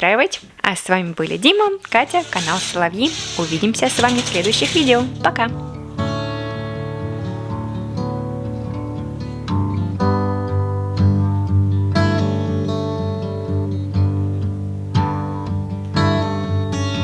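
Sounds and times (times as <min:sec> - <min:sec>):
strummed acoustic guitar: 0:01.2 - 0:17.0.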